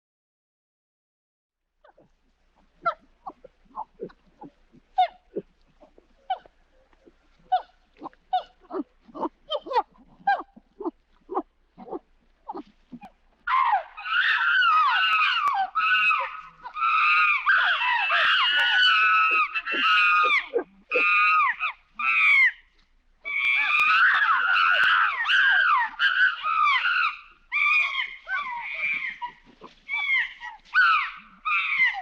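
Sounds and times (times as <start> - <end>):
monkey grunting calls: 2.8 - 22.5, 23.3 - 32.0
monkey screeching: 7.5 - 22.6, 23.3 - 32.0.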